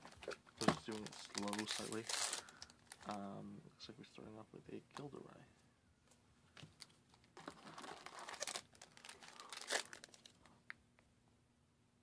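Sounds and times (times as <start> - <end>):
wrapper crinkling and tearing: 0.2 - 3.2, 7.3 - 10.6.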